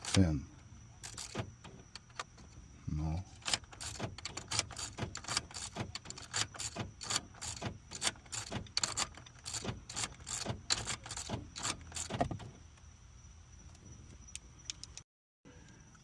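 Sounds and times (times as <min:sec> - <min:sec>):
keys jangling: 0:03.4 - 0:12.4.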